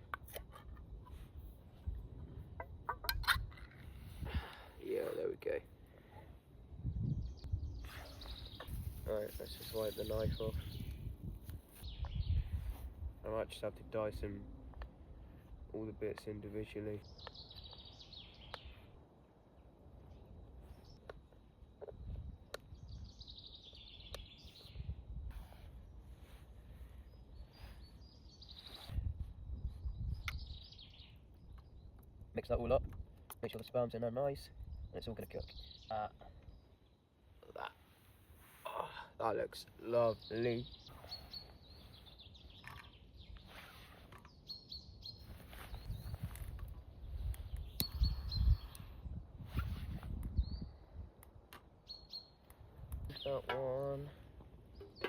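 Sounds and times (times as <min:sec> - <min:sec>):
small birds chirping: 0:00.0 - 0:55.0
low rumbling on microphone: 0:06.7 - 0:09.0
songbird trilling: 0:39.8 - 0:43.6, 0:47.1 - 0:48.9, 0:51.8 - 0:52.4.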